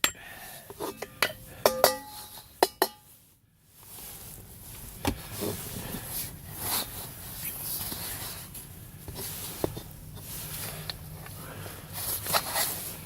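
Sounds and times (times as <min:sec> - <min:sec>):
scrap metal clinking and clanking: 0:00.0 - 0:03.1
rustling: 0:00.8 - 0:13.0.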